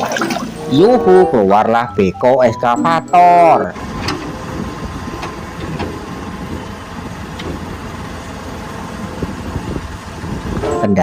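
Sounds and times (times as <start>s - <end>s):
engine rumble: 3.7s - 11.0s.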